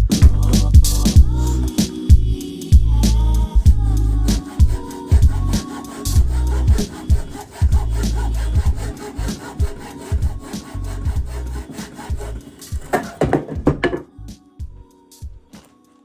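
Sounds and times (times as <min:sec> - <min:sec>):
background music: 0:00.0 - 0:16.0
saw cutting wood: 0:01.4 - 0:13.7.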